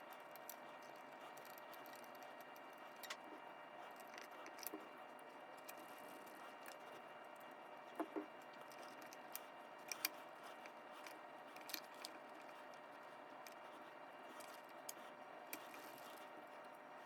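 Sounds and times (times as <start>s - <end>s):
light clicks of small parts: 0.1s - 3.2s, 3.9s - 13.6s.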